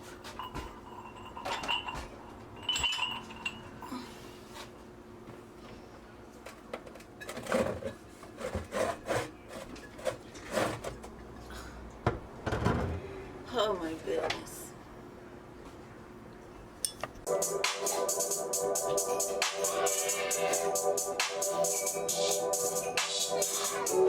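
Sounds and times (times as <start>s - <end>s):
rubbing and scraping strokes: 8.4s - 10.9s.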